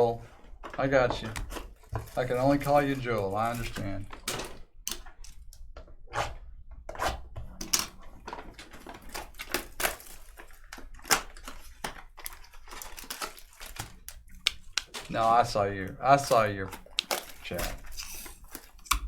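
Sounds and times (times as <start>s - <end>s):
packaging crinkling: 0.8s - 4.3s, 8.1s - 19.0s
cards clicking and tapping: 7.6s - 19.0s.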